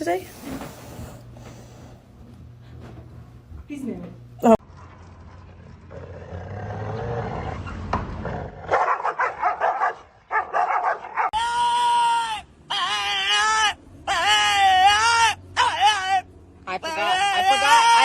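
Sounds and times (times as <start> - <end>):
dog yipping: 8.7 - 11.4.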